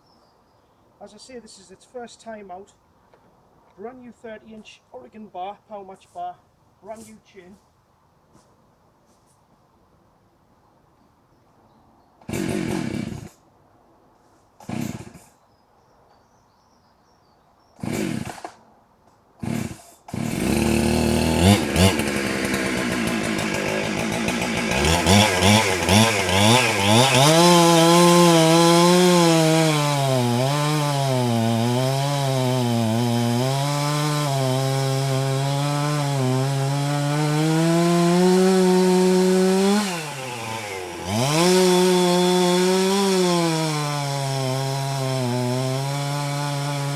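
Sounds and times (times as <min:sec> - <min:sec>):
chainsaw revving and cutting: 0:12.2 - 0:13.4, 0:14.6 - 0:15.4, 0:17.8 - 0:18.6, 0:19.4 - 0:46.9.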